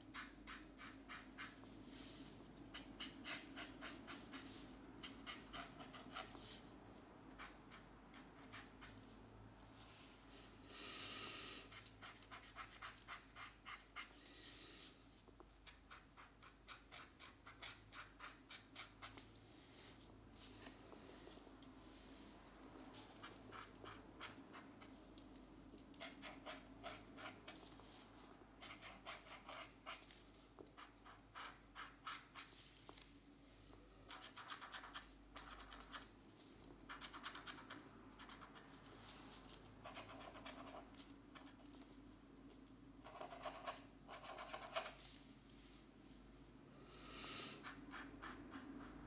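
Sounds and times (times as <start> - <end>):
markers scratching on paper: 0.1 - 1.6, 2.7 - 6.6, 11.7 - 14.2, 15.6 - 19.3, 23.0 - 25.0, 28.6 - 32.7, 34.1 - 36.1, 36.9 - 39.1, 39.8 - 41.6, 43.0 - 45.0.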